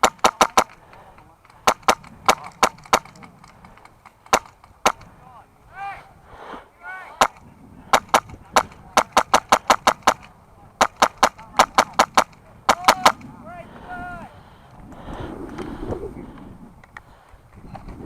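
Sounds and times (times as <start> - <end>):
airsoft rifle shots: 0.0 - 0.8, 1.5 - 5.1, 7.2 - 13.3.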